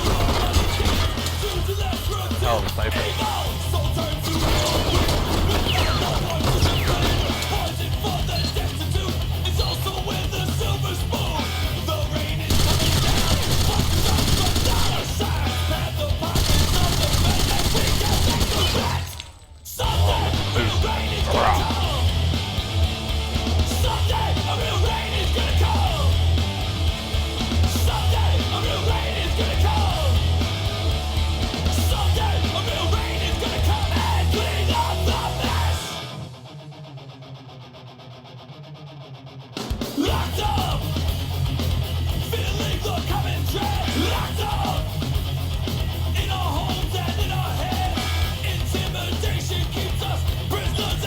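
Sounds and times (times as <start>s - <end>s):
shouted vocals: 0.0s - 11.9s, 12.5s - 22.2s, 42.3s - 44.9s
heavy rock music: 0.0s - 51.0s.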